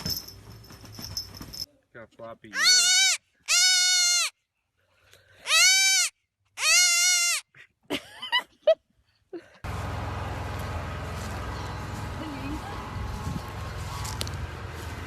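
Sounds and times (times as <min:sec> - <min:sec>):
goat bleating: 0:02.5 - 0:04.3, 0:05.5 - 0:07.4.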